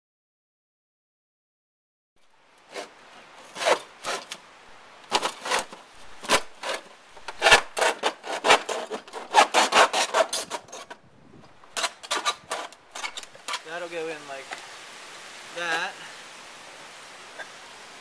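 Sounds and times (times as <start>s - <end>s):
hand tool rasping on plastic pipe: 2.7s - 4.4s, 5.1s - 11.0s.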